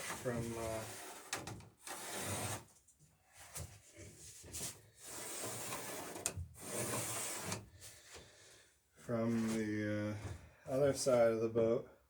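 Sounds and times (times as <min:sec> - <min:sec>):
wood scraping and rubbing: 0:00.0 - 0:02.7, 0:04.5 - 0:07.6.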